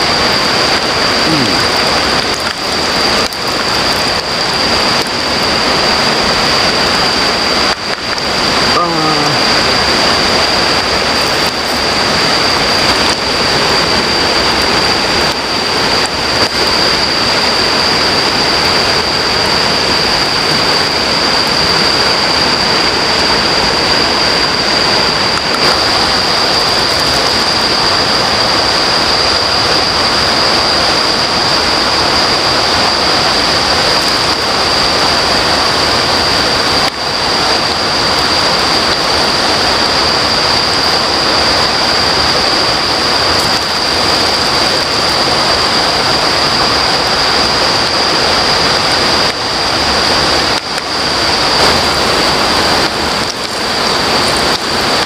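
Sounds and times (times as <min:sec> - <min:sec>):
river rushing: 0:00.0 - 0:55.0.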